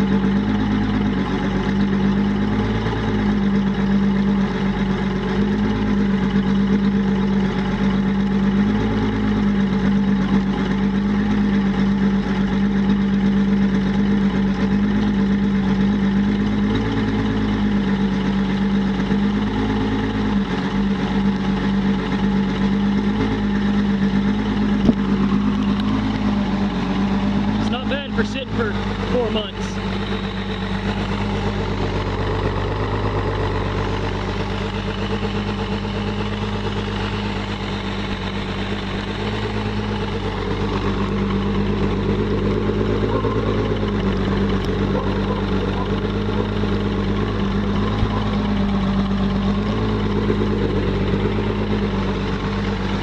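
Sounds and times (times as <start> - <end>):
outboard motor idling: 0.0 - 53.0.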